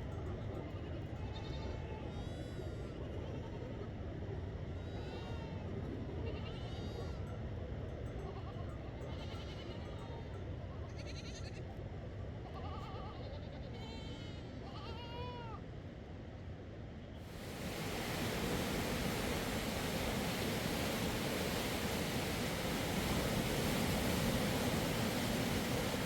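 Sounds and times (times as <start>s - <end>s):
low rushing noise: 17.3s - 26.0s.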